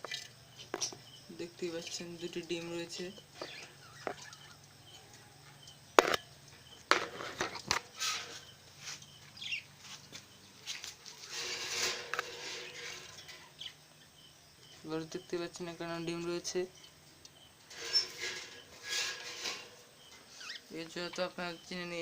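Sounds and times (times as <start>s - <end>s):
budgerigars chirping: 2.1s - 4.6s, 9.4s - 9.7s, 12.6s - 15.8s, 20.0s - 21.8s.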